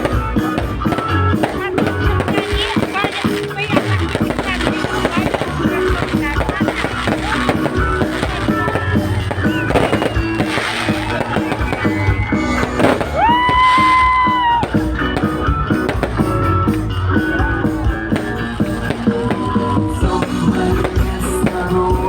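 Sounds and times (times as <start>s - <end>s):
amplified pop music: 0.0s - 22.0s.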